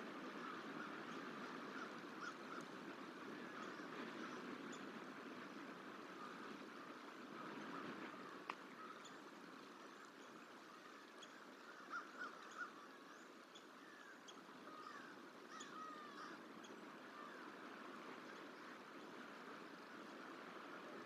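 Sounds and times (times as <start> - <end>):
faint outdoor background hiss: 0.0 - 21.0
crow cawing: 11.7 - 13.0, 14.6 - 16.5.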